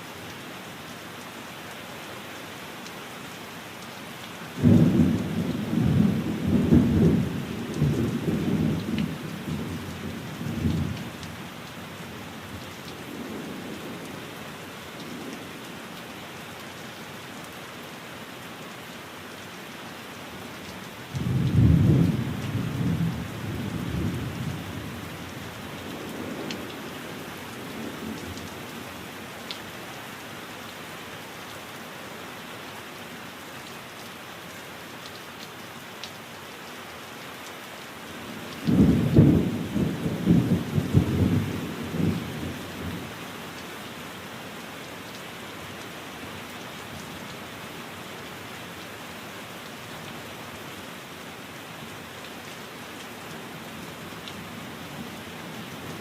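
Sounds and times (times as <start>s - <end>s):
steady rain: 0.0s - 56.0s
low rumbling thunder: 21.2s - 24.7s, 38.7s - 43.0s.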